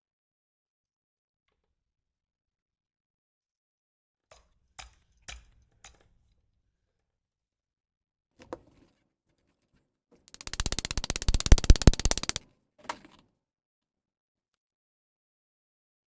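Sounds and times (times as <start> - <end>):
fast mechanical clicks: 10.3 - 12.4
short clatter: 10.3 - 12.4.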